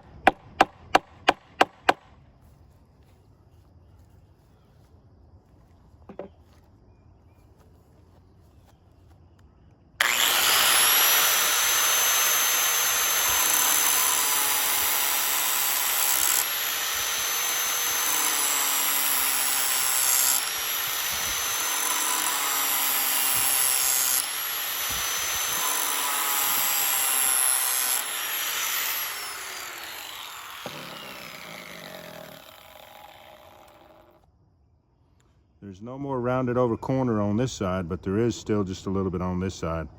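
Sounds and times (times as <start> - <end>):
angle grinder grinding steel: 10.0 - 34.2.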